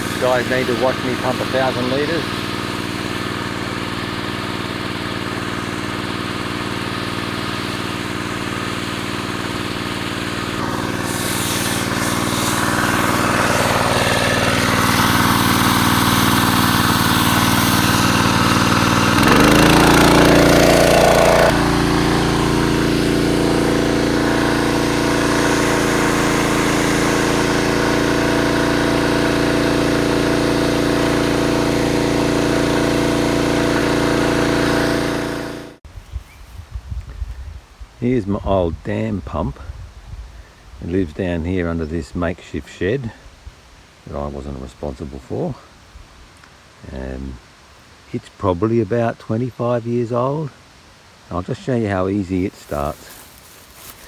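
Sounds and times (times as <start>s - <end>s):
small pump engine running: 0.0s - 35.8s, 51.5s - 54.0s.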